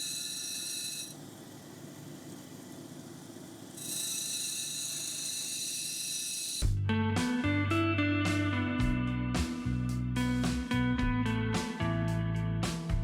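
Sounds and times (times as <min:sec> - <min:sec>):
grinding machine whine: 0:00.0 - 0:06.6.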